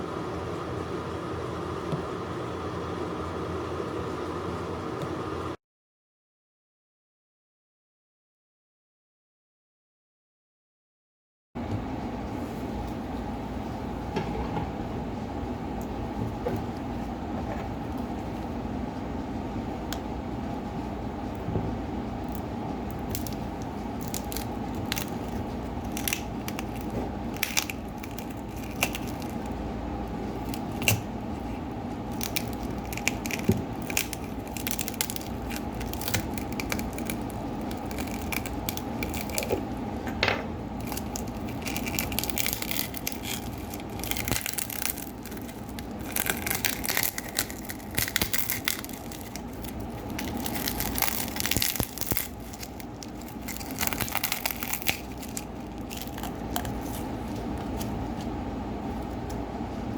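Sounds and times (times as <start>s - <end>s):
steady low hum: 0.0s - 5.6s, 11.6s - 59.9s
crackling and crinkling of parts: 22.2s - 31.1s, 32.0s - 40.2s, 40.8s - 58.3s.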